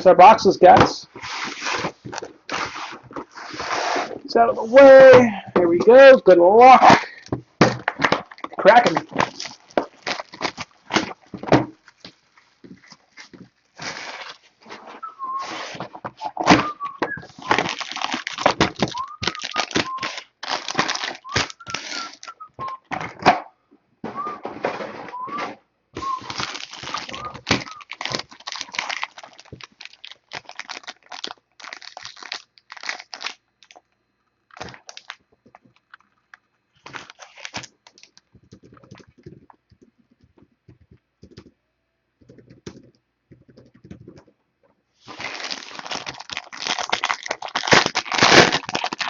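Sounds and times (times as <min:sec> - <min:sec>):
plastic shrink wrap tearing: 0:08.2 - 0:11.3, 0:17.3 - 0:22.4, 0:26.0 - 0:33.8, 0:34.5 - 0:35.2, 0:36.8 - 0:38.2, 0:45.0 - 0:49.0
plastic squeaking: 0:14.6 - 0:23.2, 0:26.0 - 0:33.8.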